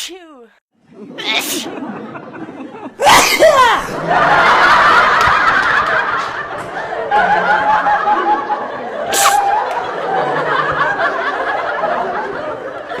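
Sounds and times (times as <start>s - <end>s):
people giggling and laughing: 0.9s - 3.0s, 3.6s - 13.0s
short sneeze: 1.4s - 1.7s, 3.0s - 3.8s, 9.1s - 9.5s.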